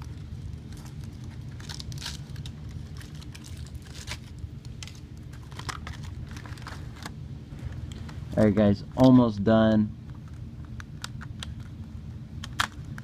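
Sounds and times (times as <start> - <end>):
aluminum foil crinkling: 0.0 - 7.1
steady low hum: 0.0 - 13.0.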